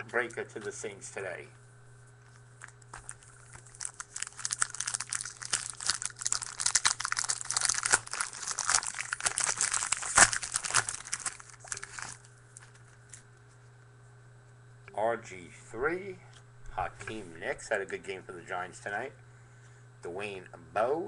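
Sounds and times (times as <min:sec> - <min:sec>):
wrapper crinkling: 0:02.6 - 0:13.2.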